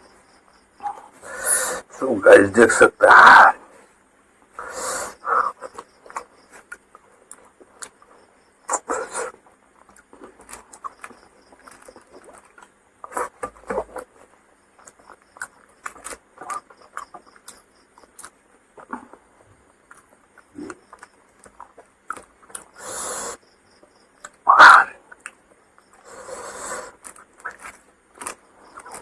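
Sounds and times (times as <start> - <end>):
person chewing food: 5.4 - 22.8, 24.2 - 29.0.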